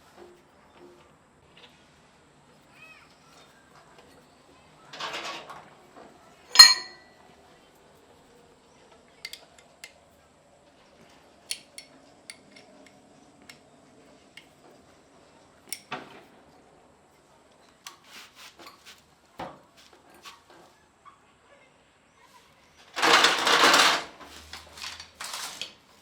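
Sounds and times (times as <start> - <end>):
hard objects clinking: 6.5 - 7.1
loud clank: 6.6 - 7.0.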